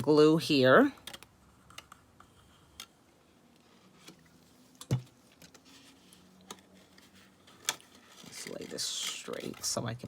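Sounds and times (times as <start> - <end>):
paper and supplies handled: 3.6 - 10.0.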